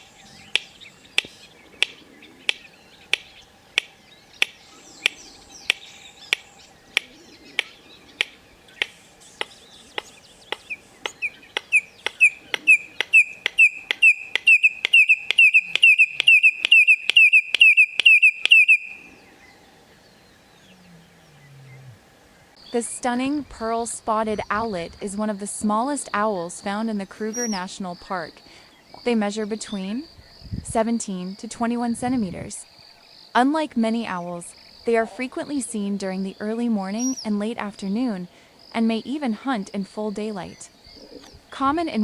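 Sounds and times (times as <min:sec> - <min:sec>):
bird sharp clicks: 0:00.0 - 0:19.0
bird piercing whistled notes: 0:08.8 - 0:19.1.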